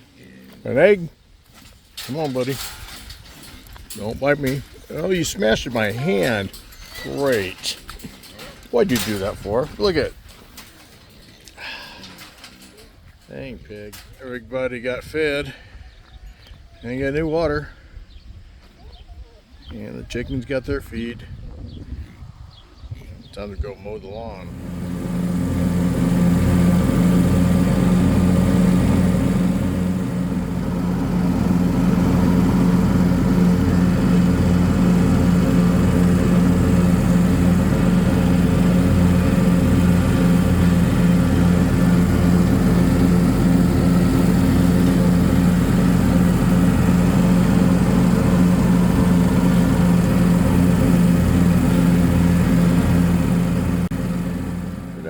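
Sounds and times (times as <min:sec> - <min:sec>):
lawn mower engine running: 0:02.0 - 0:12.6, 0:24.4 - 0:55.0.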